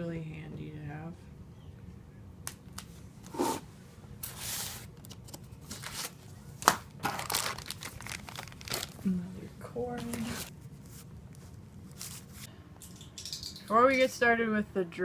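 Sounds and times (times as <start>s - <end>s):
plastic crinkling and rustling: 5.0s - 9.2s.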